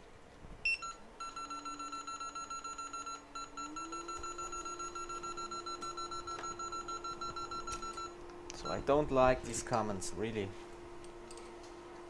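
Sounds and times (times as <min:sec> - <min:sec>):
blower fan hum: 0:00.0 - 0:12.0
rapid electronic beeping: 0:00.7 - 0:09.0.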